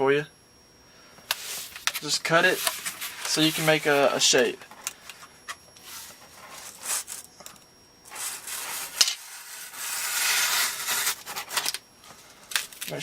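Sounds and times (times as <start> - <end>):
box cutter cutting cardboard: 8.1 - 11.7.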